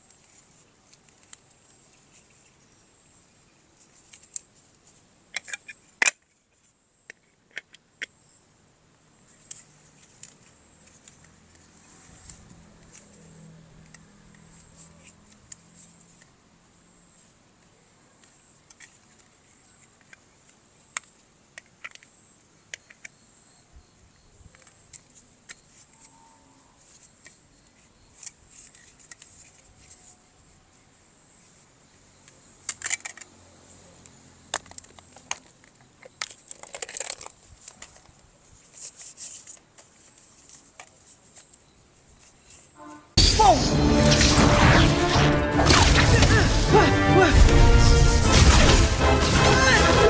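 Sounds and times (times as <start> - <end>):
toy parts clicking: 5.3 - 6.4, 18.2 - 22.1, 24.5 - 26.2, 28.1 - 30.0, 32.2 - 33.4, 34.0 - 38.1
packaging rustling: 34.6 - 41.5.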